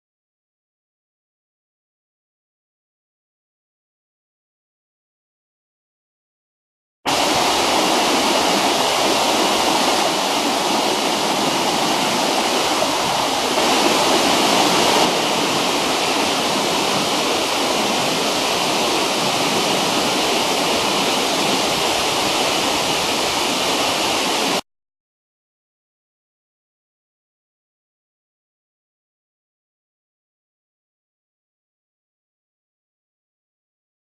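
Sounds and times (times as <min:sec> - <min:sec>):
waterfall rushing: 0:07.1 - 0:24.6.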